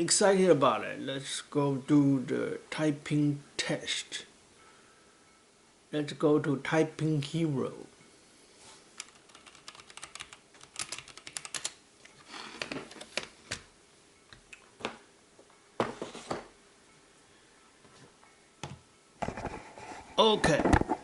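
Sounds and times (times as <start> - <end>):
mechanical keyboard keys clicking: 9.0 - 11.8.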